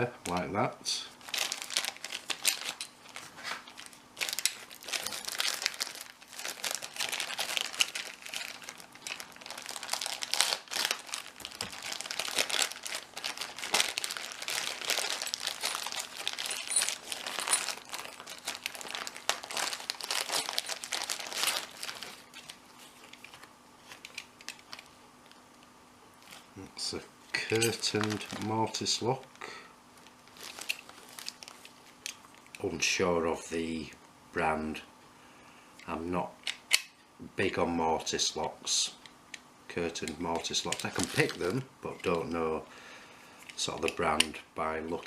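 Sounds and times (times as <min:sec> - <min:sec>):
paper crumpling and rustling: 0:01.2 - 0:25.4, 0:26.2 - 0:26.6, 0:27.4 - 0:28.8, 0:30.0 - 0:32.4, 0:40.4 - 0:41.6.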